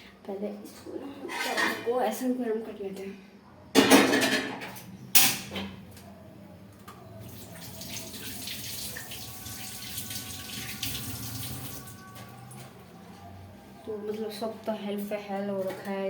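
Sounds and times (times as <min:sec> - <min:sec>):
kitchen tap running into sink: 0:07.2 - 0:12.6.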